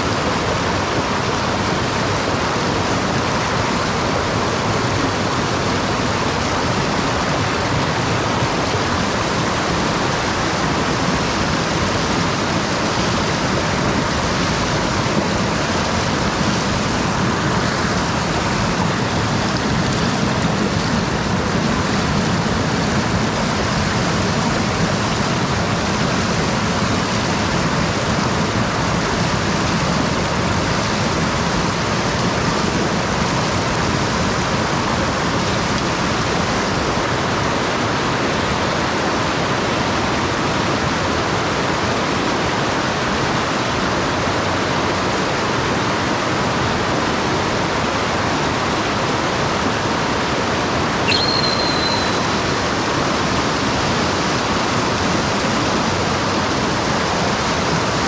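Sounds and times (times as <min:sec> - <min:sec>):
stream water rushing: 0:00.0 - 0:45.7
short high-pitched sound: 0:51.1 - 0:53.3.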